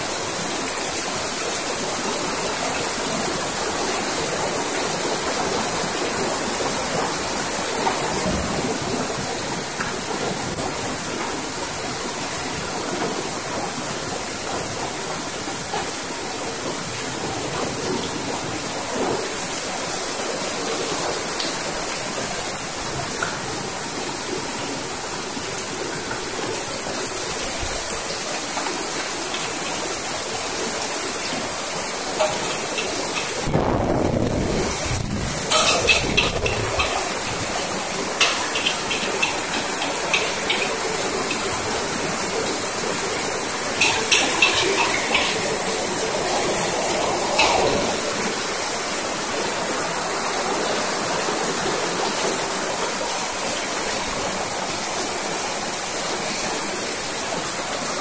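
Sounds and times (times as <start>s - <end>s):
rice frying in a wok: 26.7s - 33.5s, 34.2s - 46.0s.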